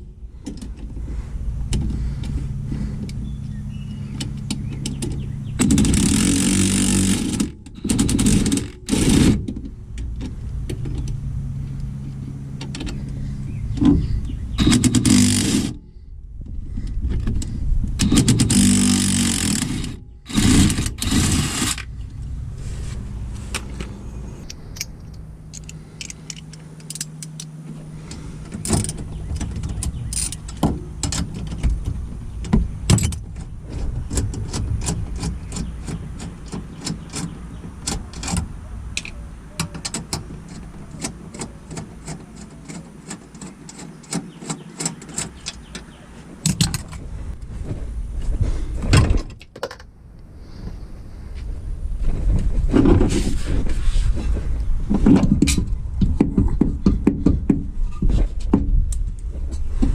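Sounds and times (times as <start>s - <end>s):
metal scraping: 17.5s - 30.6s.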